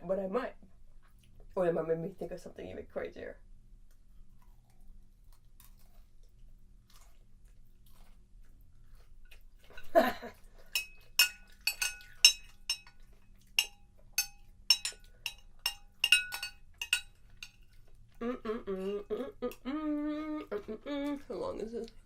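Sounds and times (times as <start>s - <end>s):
spoon clinking on ceramic bowl: 10.7s - 13.0s, 13.6s - 17.6s.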